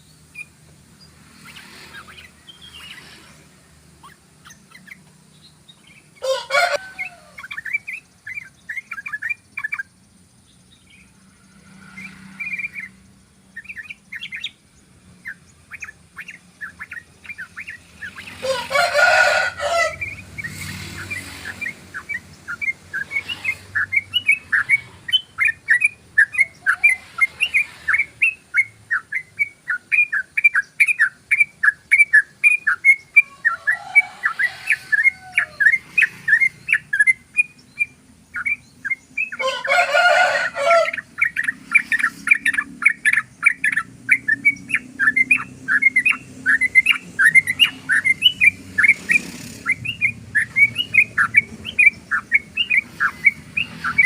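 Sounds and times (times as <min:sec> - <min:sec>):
bulbul singing: 0:00.0 - 0:54.0
loud drawn-out bird call: 0:06.2 - 0:09.8, 0:15.9 - 0:54.0.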